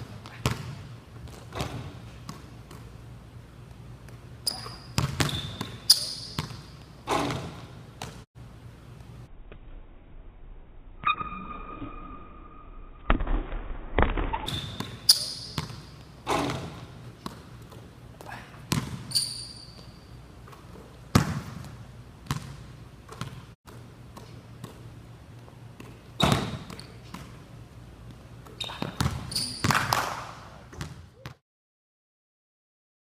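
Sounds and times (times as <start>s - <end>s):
basketball bouncing on court: 0.0s - 2.9s, 4.5s - 8.2s, 14.0s - 20.0s, 20.6s - 24.9s, 25.7s - 27.5s, 28.2s - 31.4s.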